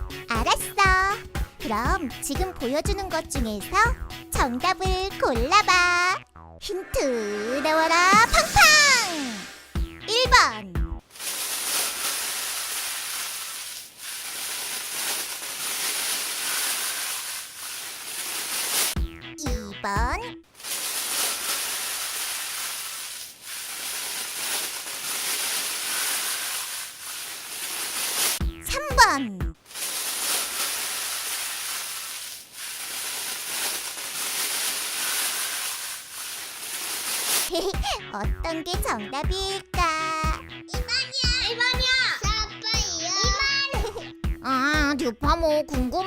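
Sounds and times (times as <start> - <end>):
steady hissing: 11.1 - 19.0, 20.5 - 28.4, 29.6 - 37.5.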